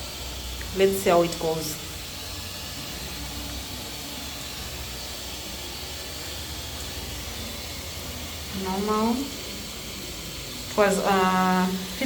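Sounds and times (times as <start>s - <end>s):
washing machine water running: 0.0s - 12.0s.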